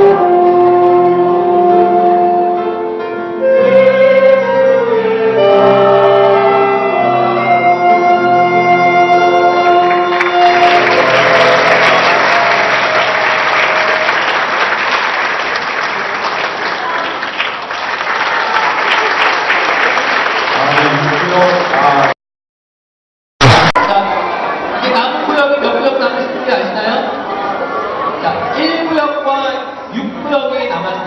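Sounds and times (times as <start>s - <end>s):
audience applause: 9.9s - 22.2s.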